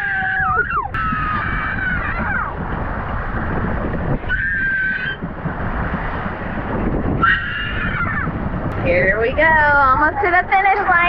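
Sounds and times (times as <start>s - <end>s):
wind buffeting microphone: 0.0s - 11.0s
riders squealing: 7.2s - 8.4s.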